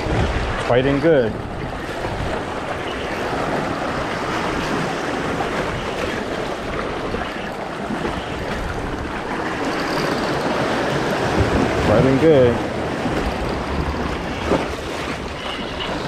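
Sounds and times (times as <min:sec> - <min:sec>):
surf washing on beach: 0:00.0 - 0:16.0
wind buffeting microphone: 0:00.0 - 0:16.0.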